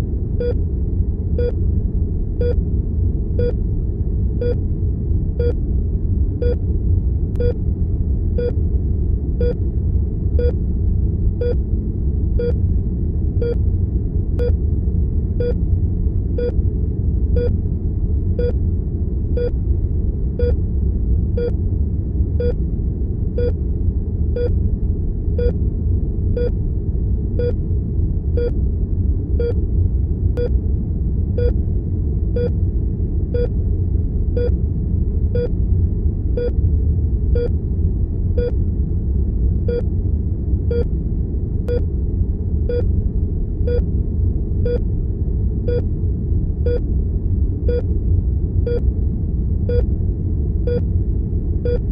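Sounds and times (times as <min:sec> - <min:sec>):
low room-tone rumble: 0:00.0 - 0:51.9
heart monitor beeping: 0:07.4 - 0:07.6, 0:32.4 - 0:32.6, 0:34.4 - 0:34.6, 0:39.7 - 0:39.9, 0:42.7 - 0:42.9, 0:44.6 - 0:44.8, 0:47.7 - 0:47.9, 0:49.7 - 0:49.9, 0:51.6 - 0:51.8.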